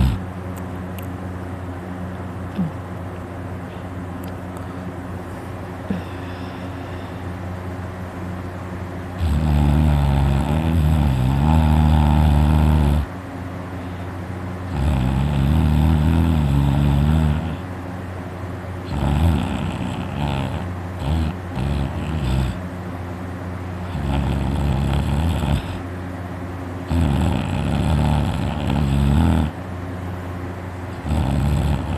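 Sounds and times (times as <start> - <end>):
person snoring loudly: 0.0 - 0.2, 9.2 - 13.1, 14.7 - 17.7, 18.9 - 22.6, 23.8 - 25.8, 26.9 - 29.6, 31.0 - 31.9
steady low hum: 0.0 - 31.9.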